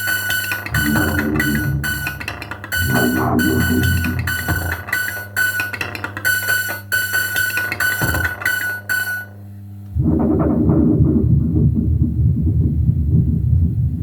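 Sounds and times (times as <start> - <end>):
repeated plucked notes: 0.0 - 9.3
low rumbling: 0.7 - 4.8, 9.9 - 14.0
steady low tone: 0.7 - 5.4.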